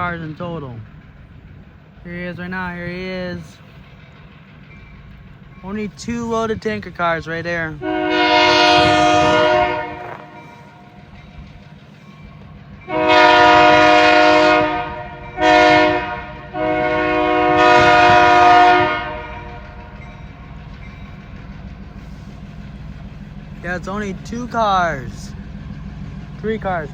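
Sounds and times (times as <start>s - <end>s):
low engine rumble: 0.0s - 26.9s
locomotive air horn blasts: 7.8s - 10.6s, 12.9s - 19.8s.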